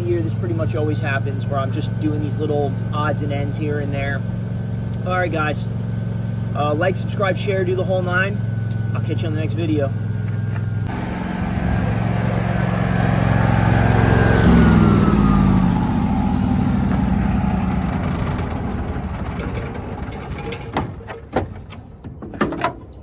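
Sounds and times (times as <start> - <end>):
vehicle engine passing by: 0.0 - 20.6.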